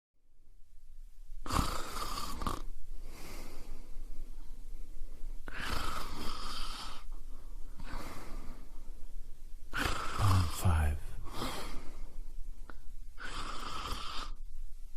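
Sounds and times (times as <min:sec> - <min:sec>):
faint breath: 0:03.0 - 0:09.1, 0:10.3 - 0:12.9
person snoring: 0:09.8 - 0:11.6.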